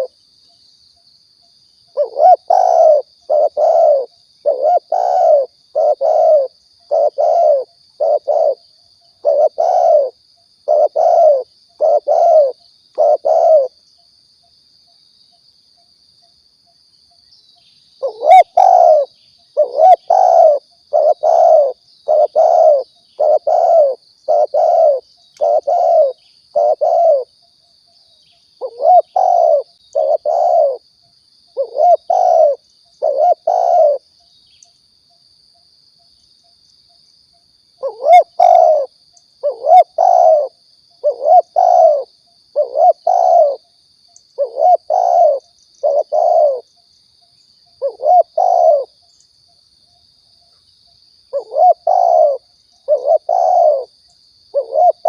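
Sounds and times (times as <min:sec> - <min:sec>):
dove cooing: 0:01.9 - 0:08.6, 0:09.2 - 0:13.8, 0:18.0 - 0:27.3, 0:28.6 - 0:30.8, 0:31.6 - 0:34.0, 0:37.8 - 0:43.6, 0:44.4 - 0:46.7, 0:47.8 - 0:49.0, 0:51.3 - 0:53.9, 0:54.5 - 0:55.0.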